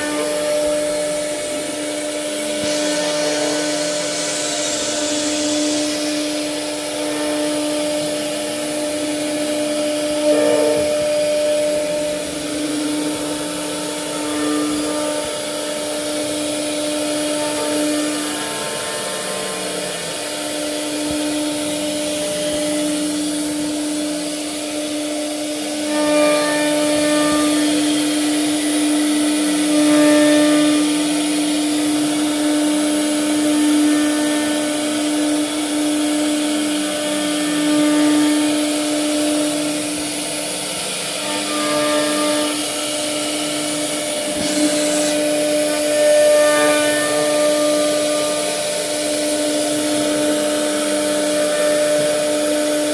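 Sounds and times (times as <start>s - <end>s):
low motor tone: 0.0s - 28.9s
router spindle whine cutting wood: 0.0s - 52.9s.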